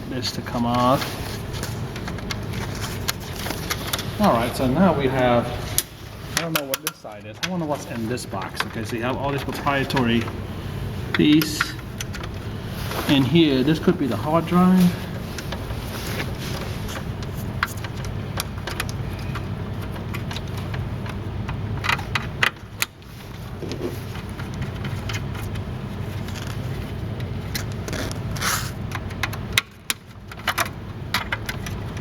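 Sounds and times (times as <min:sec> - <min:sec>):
steady low hum: 0:00.0 - 0:32.0
metal and plastic parts rattling: 0:00.2 - 0:04.7, 0:11.1 - 0:32.0.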